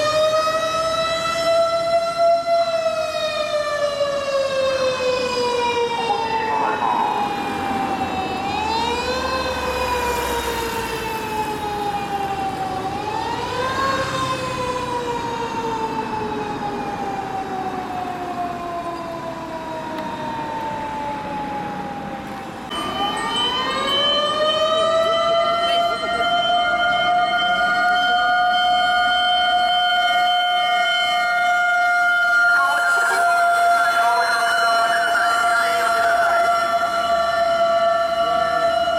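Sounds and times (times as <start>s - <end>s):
louder siren holding pitch: 0.0s - 38.9s
steady high tone: 22.7s - 31.4s, 32.2s - 38.9s.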